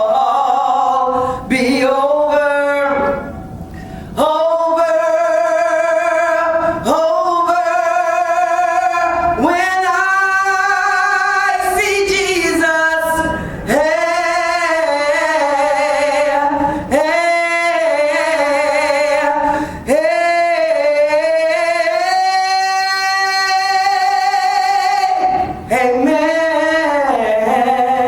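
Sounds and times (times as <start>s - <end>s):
woman singing a cappella: 0.0s - 3.4s, 4.2s - 28.0s.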